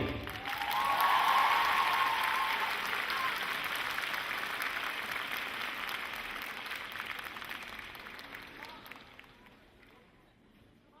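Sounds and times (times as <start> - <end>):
audience applauding: 0.0 - 9.9
drawn-out cheer: 0.3 - 3.6.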